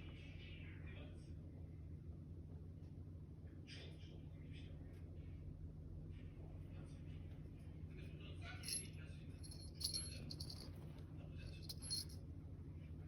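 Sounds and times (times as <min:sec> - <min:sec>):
light metallic jingling: 0:08.6 - 0:10.9, 0:11.5 - 0:12.2
low hum: 0:09.4 - 0:10.7, 0:11.6 - 0:12.2.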